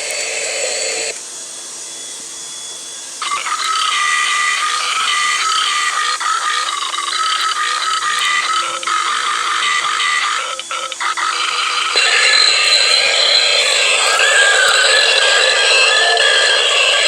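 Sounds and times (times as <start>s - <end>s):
toucan rattling croak: 3.2s - 17.0s.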